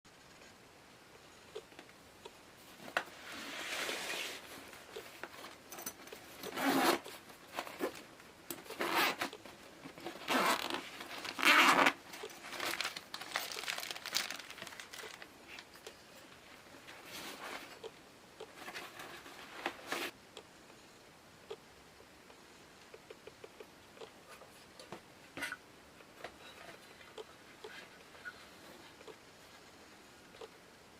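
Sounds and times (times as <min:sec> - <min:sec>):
zipper rasping: 0:06.4 - 0:07.1, 0:08.7 - 0:09.4, 0:10.0 - 0:12.8
material rustling: 0:10.0 - 0:15.7.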